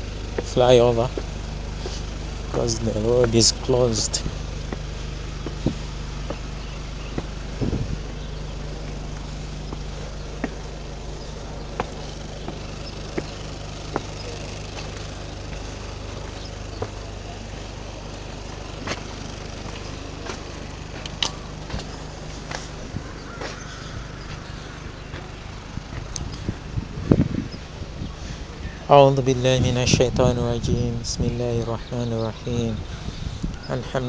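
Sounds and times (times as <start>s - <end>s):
steady low rumble: 0.0s - 34.0s
footsteps walking: 0.3s - 26.6s.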